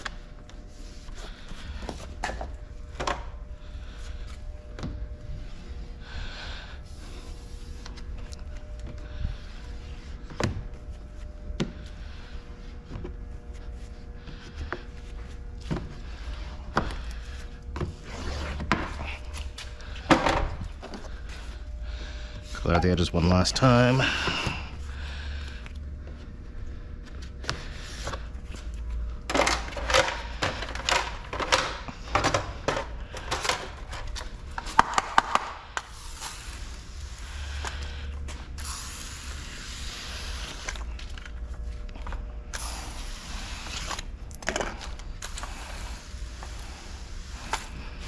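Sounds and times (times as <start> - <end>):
low steady hum: 0.0 - 48.0
long hisses: 35.9 - 37.9, 38.5 - 40.8, 42.5 - 44.0.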